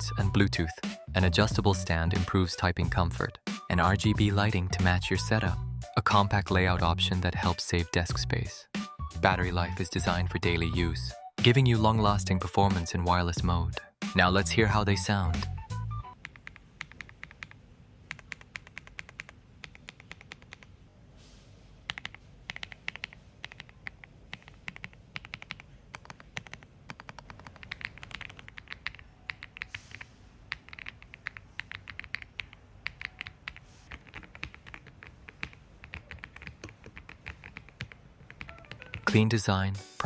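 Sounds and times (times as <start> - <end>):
mechanical keyboard typing: 16.1 - 20.7, 21.9 - 39.2.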